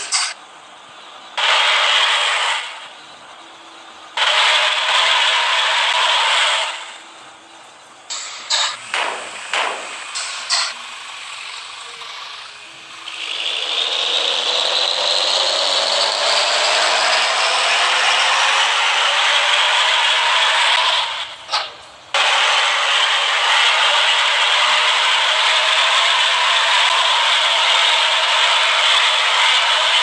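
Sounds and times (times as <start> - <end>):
air horn raspy rattling hiss: 4.2 - 7.0, 8.1 - 30.0.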